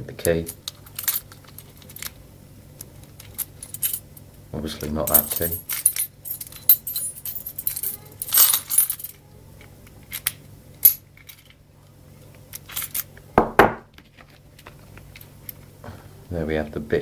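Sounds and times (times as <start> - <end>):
metal keys jangling: 0.4 - 2.1, 3.2 - 4.0, 5.0 - 9.2, 12.5 - 13.1.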